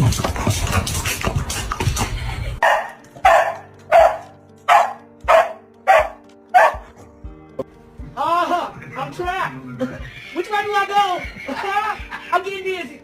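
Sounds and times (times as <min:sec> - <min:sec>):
dog barking: 0:02.6 - 0:07.1.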